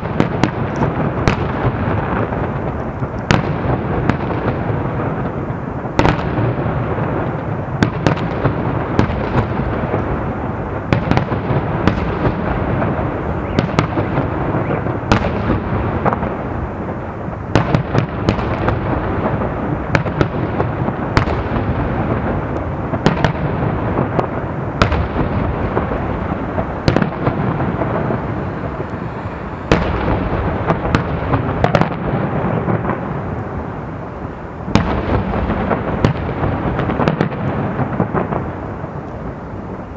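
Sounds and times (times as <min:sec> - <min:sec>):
fireworks bangs: 0:00.0 - 0:39.9
rumble of bursting shells: 0:17.6 - 0:38.7.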